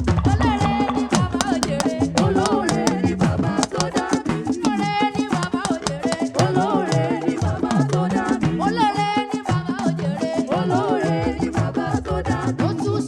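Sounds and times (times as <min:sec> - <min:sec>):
fast percussion and shakers: 0:00.0 - 0:13.0
upbeat gospel band music: 0:00.0 - 0:13.0.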